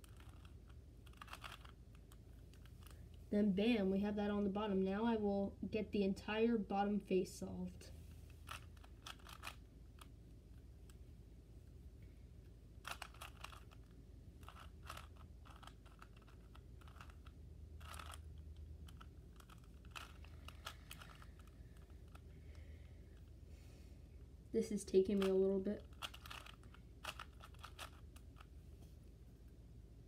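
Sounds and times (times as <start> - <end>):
puzzle cube plastic clicking: 0.0 - 3.2, 8.3 - 11.0, 12.8 - 23.3, 25.1 - 28.6.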